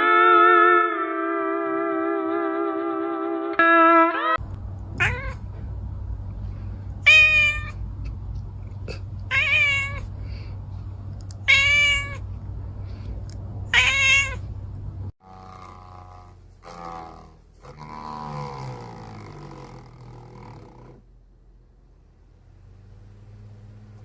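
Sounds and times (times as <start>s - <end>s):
steady low hum: 4.4s - 13.8s, 14.4s - 24.0s
cat meowing: 5.0s - 5.4s, 7.0s - 7.8s, 9.3s - 10.1s, 11.4s - 12.2s, 13.7s - 14.4s.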